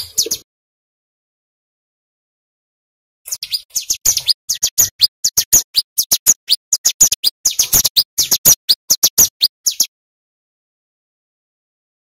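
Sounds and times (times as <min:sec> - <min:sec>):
bird singing high chipping notes: 0:00.0 - 0:00.4, 0:03.3 - 0:09.9.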